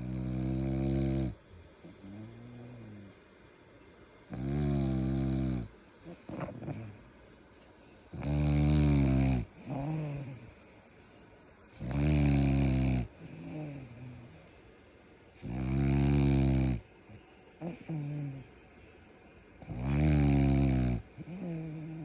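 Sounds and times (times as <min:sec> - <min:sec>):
dog snoring: 0:00.0 - 0:03.4, 0:04.2 - 0:07.5, 0:08.1 - 0:14.7, 0:15.4 - 0:18.8, 0:19.6 - 0:22.0.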